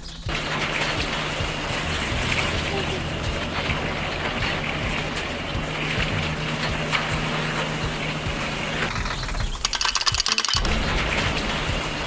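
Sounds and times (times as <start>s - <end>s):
cartoon tractor engine hum: 0.0s - 12.0s
rapid clicking with ringing tone: 0.0s - 12.0s.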